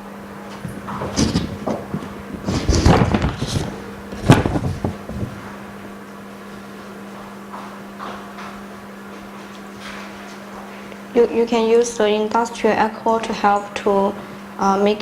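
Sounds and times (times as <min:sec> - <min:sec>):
low electrical hum: 0:00.0 - 0:15.0
objects knocking and clattering: 0:00.5 - 0:05.4.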